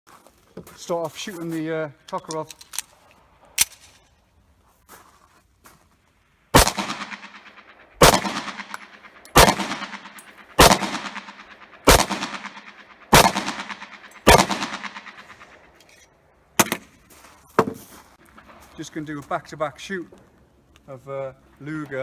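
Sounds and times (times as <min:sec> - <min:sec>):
pistol shots echoing: 0:06.5 - 0:15.8.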